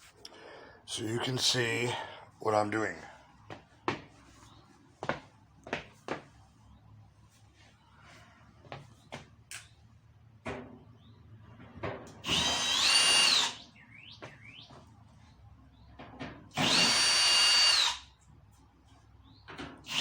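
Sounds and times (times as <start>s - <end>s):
power drill whining: 12.2s - 13.7s, 16.5s - 18.1s.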